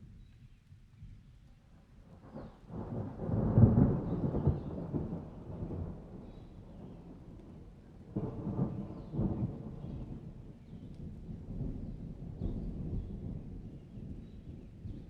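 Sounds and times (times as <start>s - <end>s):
thunder rumbling: 2.7s - 6.3s, 7.0s - 15.0s.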